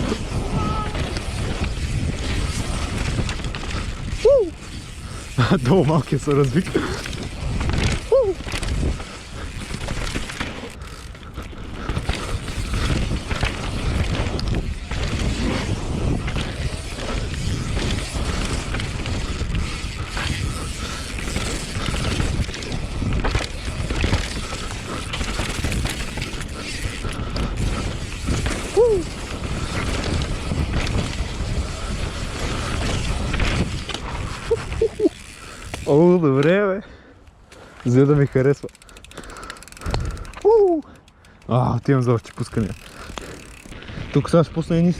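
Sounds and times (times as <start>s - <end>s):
wind rushing over microphone: 0.0s - 10.3s, 11.1s - 35.9s
tyres rolling over rough ground: 0.0s - 36.8s, 37.5s - 44.9s
bike chain and frame clatter: 0.0s - 44.9s.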